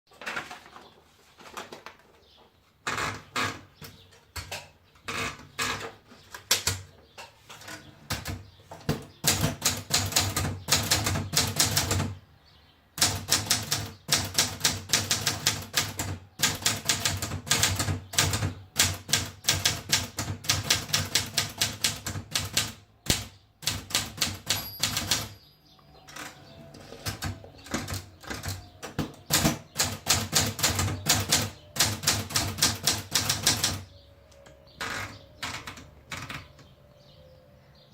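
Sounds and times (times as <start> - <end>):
typewriter keys clacking: 13.0 - 25.3, 26.2 - 33.8.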